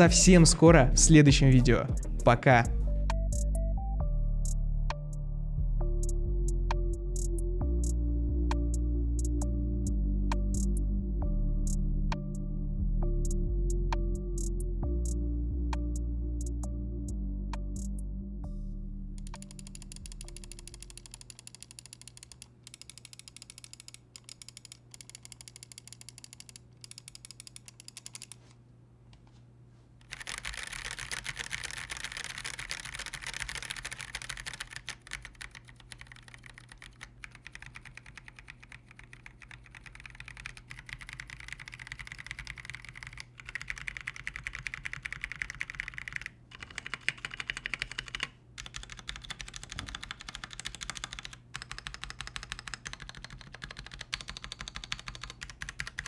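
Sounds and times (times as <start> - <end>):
mechanical keyboard typing: 19.2 - 28.5, 30.0 - 56.0.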